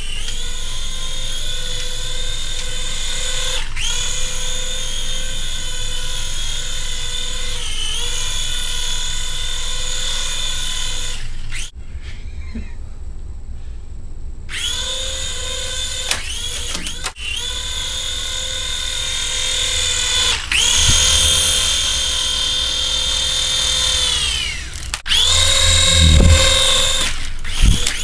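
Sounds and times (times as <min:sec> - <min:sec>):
toy rotor motors whining: 0:00.0 - 0:11.7, 0:14.5 - 0:28.0
low thumps: 0:20.6 - 0:22.8, 0:25.1 - 0:27.9.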